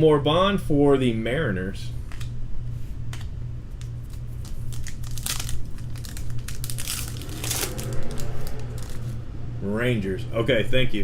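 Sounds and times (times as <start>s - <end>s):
steady low hum: 0.0s - 11.0s
foil wrappers crinkling and tearing: 3.8s - 9.0s.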